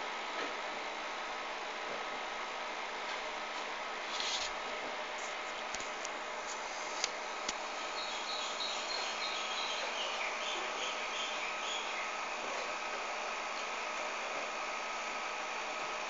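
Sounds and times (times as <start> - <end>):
radio static hiss: 3.9 - 16.0.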